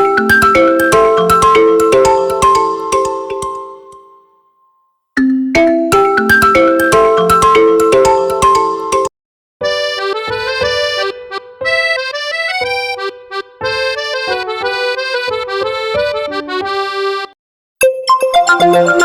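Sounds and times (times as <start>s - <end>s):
accordion-style ringtone melody: 0.0s - 4.3s, 5.2s - 19.0s.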